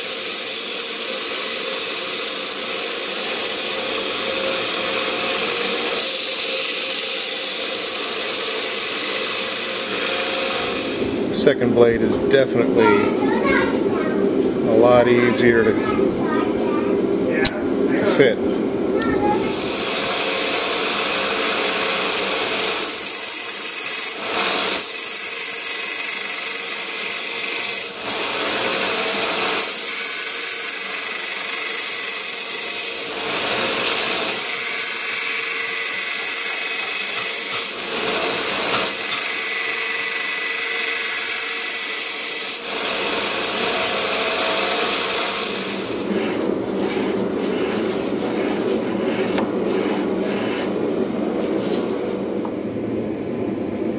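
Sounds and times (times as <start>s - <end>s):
power grinder grinding steel: 0.0s - 11.4s, 19.4s - 50.8s.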